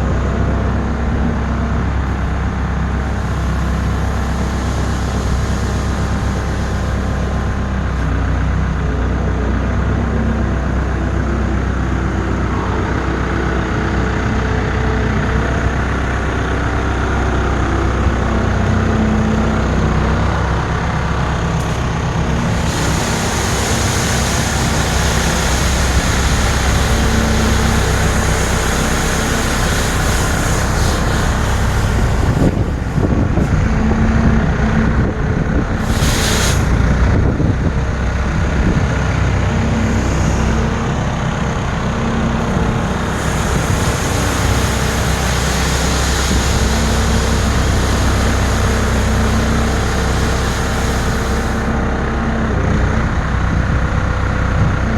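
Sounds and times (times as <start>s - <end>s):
heavy vehicle engine under load: 0.0s - 54.9s
hissing burst: 2.0s - 8.8s, 21.0s - 34.7s, 35.6s - 51.8s.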